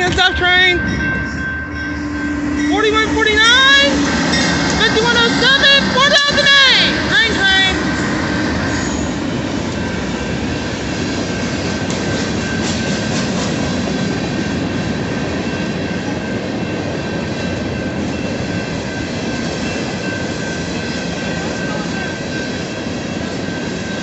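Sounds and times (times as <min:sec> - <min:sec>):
train wheels rumbling on rail: 0:00.0 - 0:24.0
high-pitched squeal: 0:01.2 - 0:12.8.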